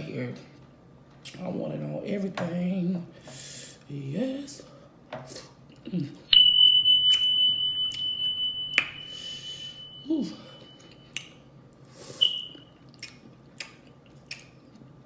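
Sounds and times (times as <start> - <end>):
steady high ringing tone: 6.3 - 11.2, 12.2 - 12.8
person saying ooh: 10.1 - 10.6
wet mouth smacks and chewing: 12.9 - 14.6.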